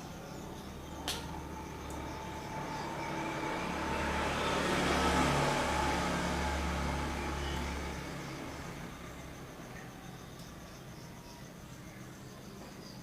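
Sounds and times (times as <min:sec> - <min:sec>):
passing vehicle hum and rush: 0:00.0 - 0:09.8.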